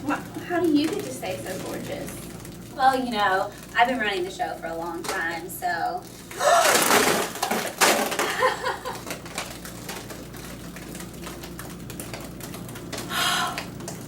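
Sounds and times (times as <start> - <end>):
wet slime rush: 6.2 - 8.4.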